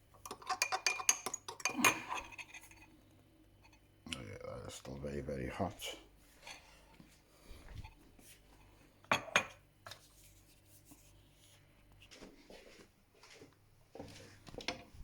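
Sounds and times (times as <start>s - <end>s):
utensils clinking on a dish: 0.2s - 2.9s.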